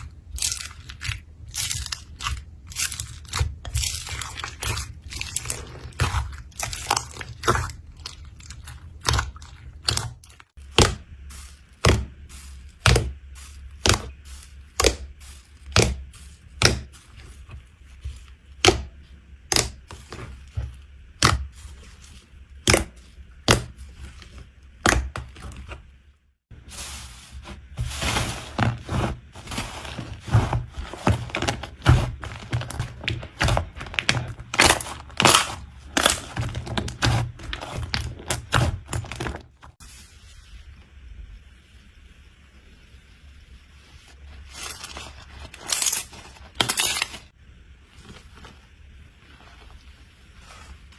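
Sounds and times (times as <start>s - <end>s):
slime popping and crackling: 0.1s - 11.0s, 27.8s - 39.5s.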